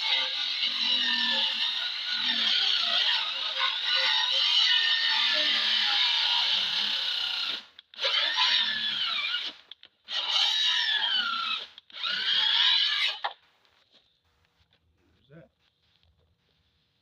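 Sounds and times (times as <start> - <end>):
power saw cutting wood: 0.0 - 13.4.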